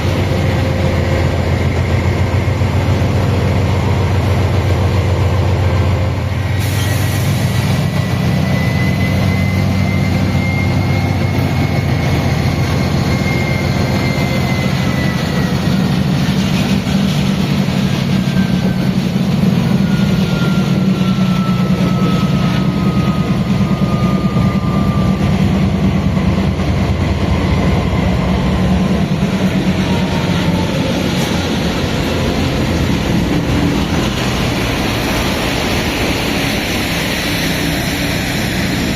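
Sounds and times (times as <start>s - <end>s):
locomotive low drone: 0.0s - 38.9s
traction motors whining: 7.9s - 38.9s.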